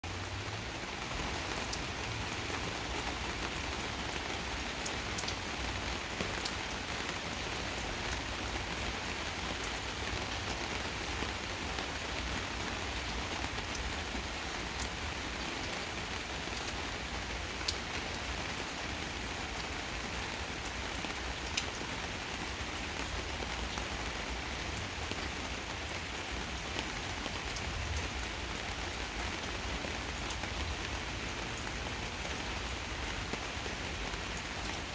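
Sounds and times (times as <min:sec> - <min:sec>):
steady rain falling: 0:00.0 - 0:34.9
sharp drip ticks: 0:04.1 - 0:05.4.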